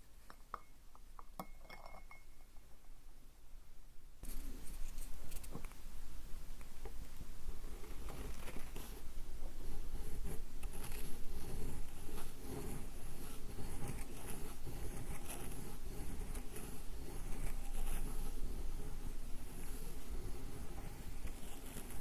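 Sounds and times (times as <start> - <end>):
ink stick rubbing on inkstone: 7.6 - 22.0.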